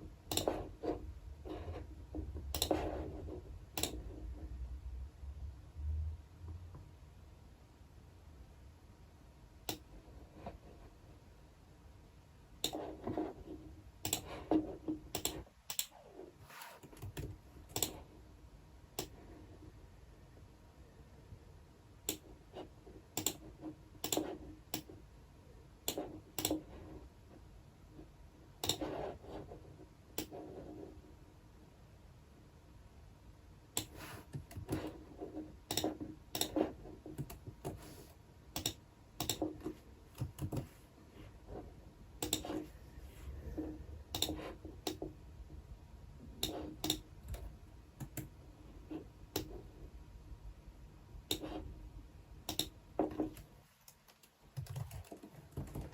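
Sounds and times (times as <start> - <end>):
computer keyboard typing: 16.8 - 18.0, 40.2 - 40.7, 52.5 - 55.9.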